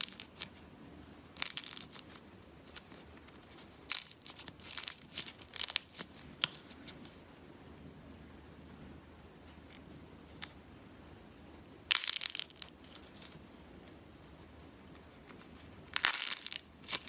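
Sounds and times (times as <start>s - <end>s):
slime crackling and popping: 0.0s - 0.6s, 1.4s - 6.8s, 11.8s - 13.4s, 15.8s - 17.0s.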